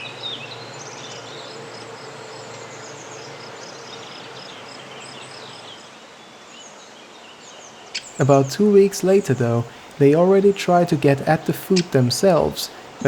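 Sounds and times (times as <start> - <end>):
birds chirping and twittering: 0.0 - 13.0
steady low hum: 8.0 - 13.0.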